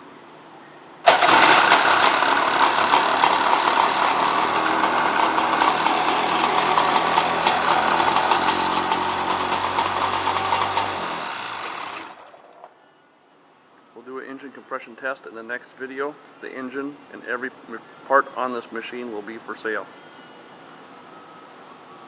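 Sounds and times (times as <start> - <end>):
jet ski engine running: 1.1 - 12.6.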